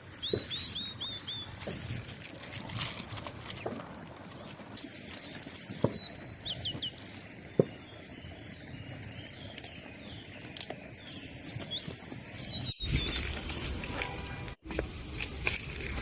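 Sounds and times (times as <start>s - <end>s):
small birds chirping: 0.0s - 2.0s, 3.5s - 14.0s
rustling noise: 0.0s - 7.2s, 10.3s - 16.0s
outdoor background noise: 0.0s - 16.0s.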